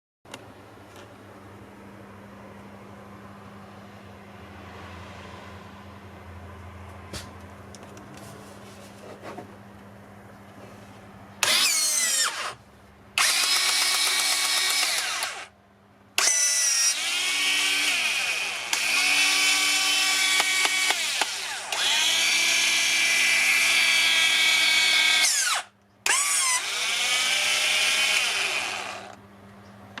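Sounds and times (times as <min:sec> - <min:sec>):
electric motor whining: 0:11.4 - 0:12.6, 0:13.2 - 0:15.5, 0:16.2 - 0:29.2.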